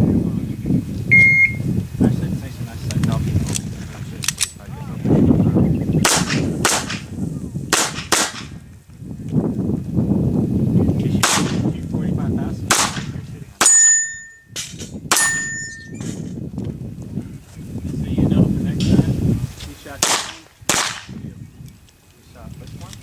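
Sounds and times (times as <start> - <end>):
pistol shots: 6.0 - 7.1, 7.7 - 8.5, 11.2 - 11.7, 12.7 - 13.8, 20.0 - 21.2
steel target ringing: 13.6 - 16.2.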